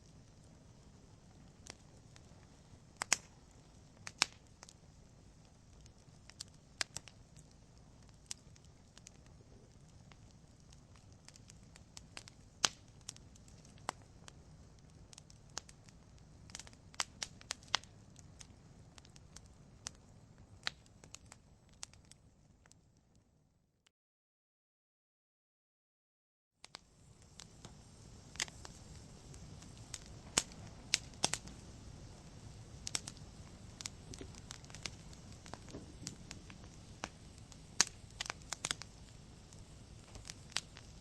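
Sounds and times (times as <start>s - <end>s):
logs crackling and popping: 0.0s - 22.8s, 26.6s - 41.0s
rush of flames: 26.7s - 41.0s.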